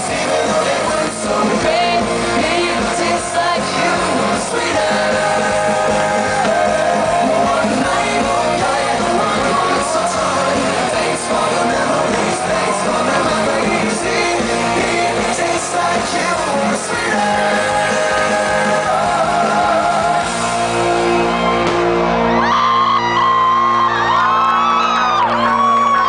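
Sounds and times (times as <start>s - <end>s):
pop-rock music with singing: 0.0s - 26.0s
shouts: 21.2s - 26.0s.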